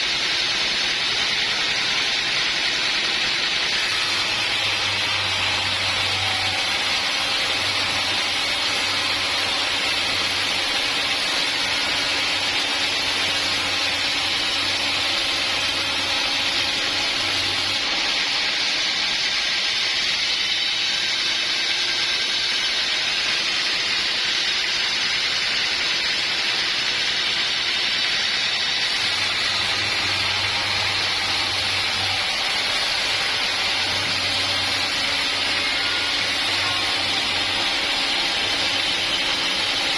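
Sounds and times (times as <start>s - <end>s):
saw cutting through log: 0.0s - 39.9s.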